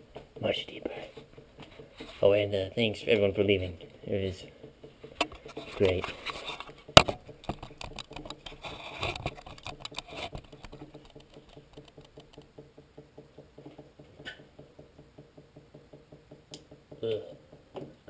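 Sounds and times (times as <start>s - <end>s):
faint rapid ticking: 0.0s - 18.0s
scraping in sink drain: 4.4s - 6.8s, 7.6s - 12.2s.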